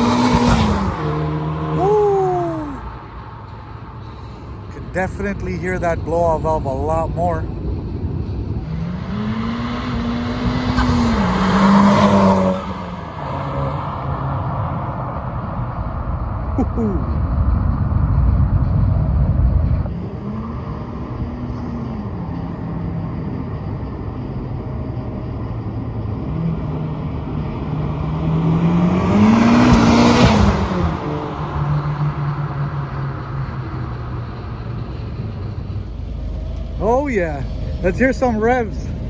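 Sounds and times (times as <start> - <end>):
car driving past: 0.0 - 16.5, 17.1 - 39.0
loud low rumble: 14.2 - 27.7, 32.4 - 39.0.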